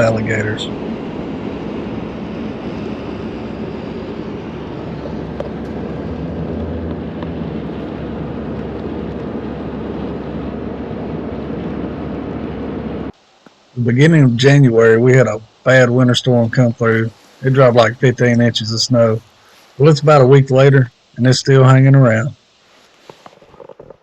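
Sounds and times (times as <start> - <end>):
road and engine noise in car cabin: 0.0 - 13.2, 16.0 - 19.2.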